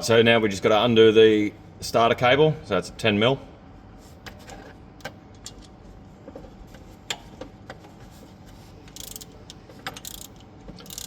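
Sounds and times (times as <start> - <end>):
ratchet clicking: 8.9 - 9.4, 10.0 - 11.0
socket wrench metallic clicks: 9.0 - 9.3, 10.0 - 11.0.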